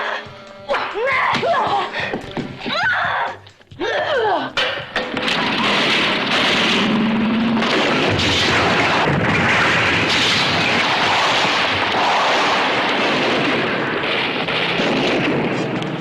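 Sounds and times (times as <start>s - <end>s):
booming explosions: 5.0s - 16.0s.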